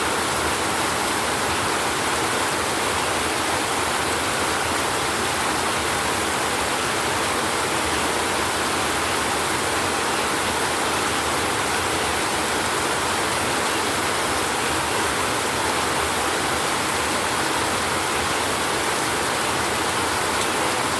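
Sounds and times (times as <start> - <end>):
steady rain: 0.0 - 20.9.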